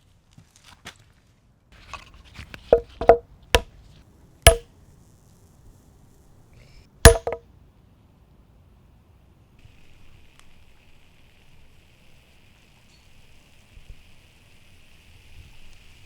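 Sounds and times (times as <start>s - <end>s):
light hammer taps: 2.7s - 3.7s, 7.1s - 7.4s
hammer blows on nail: 7.1s - 7.4s.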